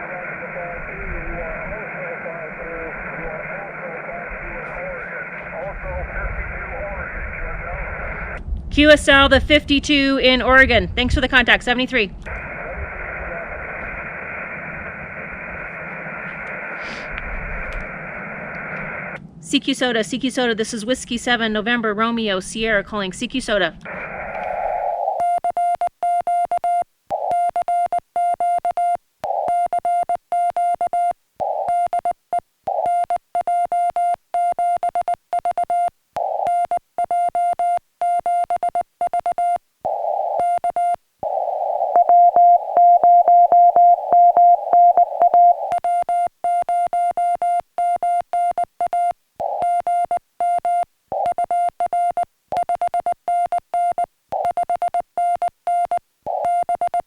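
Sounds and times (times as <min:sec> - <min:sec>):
radio hiss: 0:00.0 - 0:08.4, 0:12.2 - 0:19.2, 0:23.8 - 0:25.2, 0:41.2 - 0:45.8
morse code beeps: 0:24.5 - 0:57.0.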